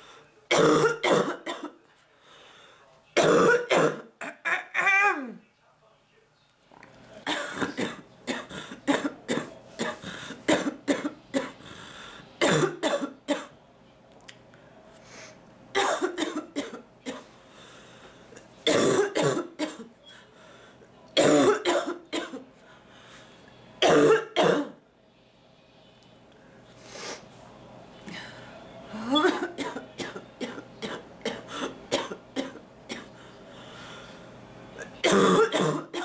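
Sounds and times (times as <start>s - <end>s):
woman clearing throat: 0.5s - 1.7s, 3.2s - 5.3s, 12.4s - 13.1s, 18.7s - 19.8s, 21.2s - 22.4s, 23.8s - 24.8s, 29.1s - 33.1s, 35.0s - 36.0s
woman coughing: 0.5s - 1.8s, 3.2s - 5.3s, 7.3s - 11.6s, 12.4s - 13.5s, 15.8s - 17.2s, 18.7s - 19.9s, 21.2s - 22.4s, 23.8s - 24.8s, 29.1s - 33.1s, 35.0s - 36.0s.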